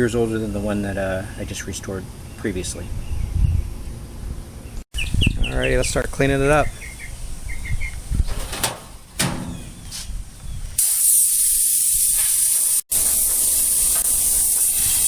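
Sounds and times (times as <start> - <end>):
loud spraying hiss: 10.8 - 15.0.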